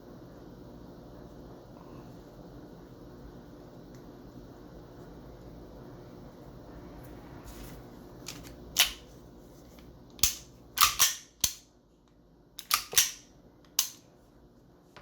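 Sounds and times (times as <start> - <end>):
pistol slide clacking: 10.2 - 11.6.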